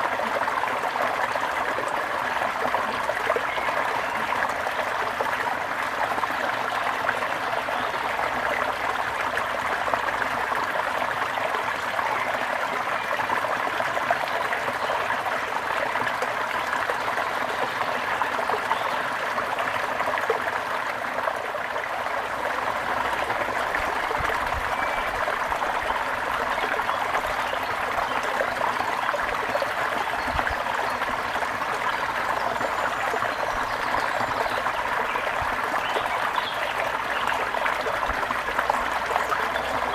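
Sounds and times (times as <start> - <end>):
river flowing: 0.0 - 39.9.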